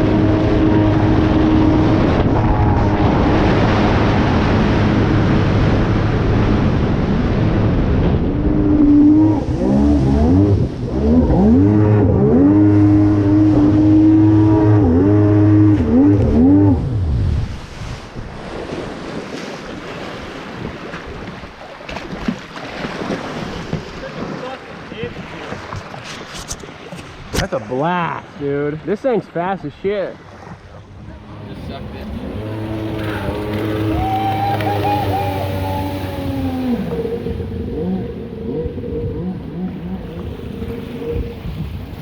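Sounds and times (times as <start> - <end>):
jet ski engine revving: 0.0 - 17.7, 30.3 - 42.0
water and wind noise: 0.0 - 42.0.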